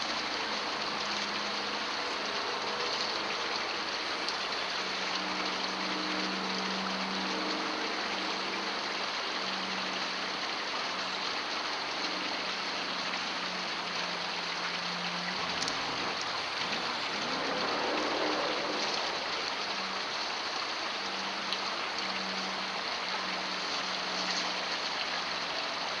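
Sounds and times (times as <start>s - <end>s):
steady hiss: 0.0s - 26.0s
low hum: 13.6s - 25.9s.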